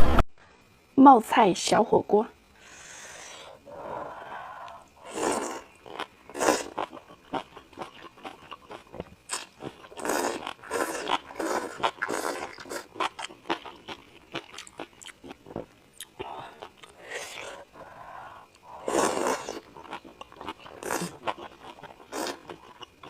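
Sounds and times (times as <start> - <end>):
close chewing and crunching: 5.1 - 17.7, 18.5 - 23.0.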